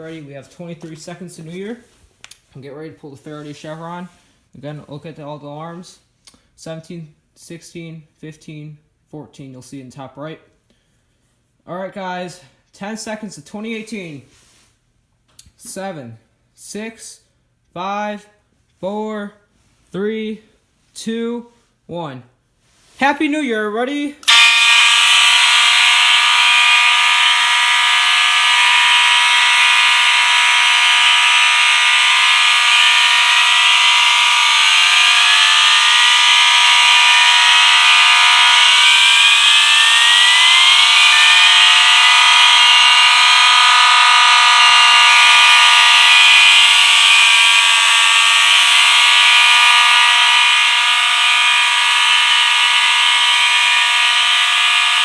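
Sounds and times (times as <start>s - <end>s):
fire alarm tones: 24.3s - 55.0s
rising sweep tones: 24.3s - 55.0s.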